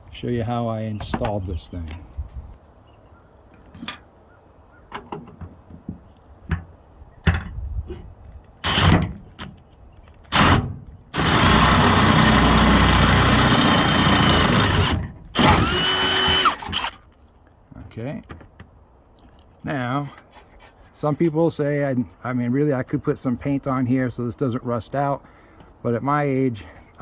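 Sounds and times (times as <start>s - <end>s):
power drill drilling steel: 8.6s - 9.1s, 10.3s - 17.0s.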